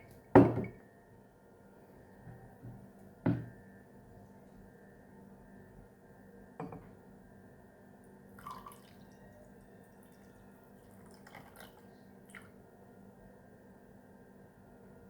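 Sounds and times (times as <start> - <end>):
faint water drips: 8.4 - 12.6.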